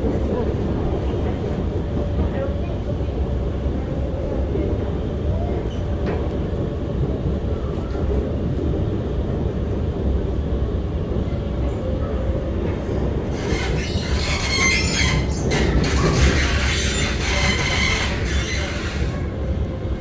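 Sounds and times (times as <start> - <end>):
train low rumble: 0.0 - 20.0
wheels screeching on rails: 13.1 - 19.6.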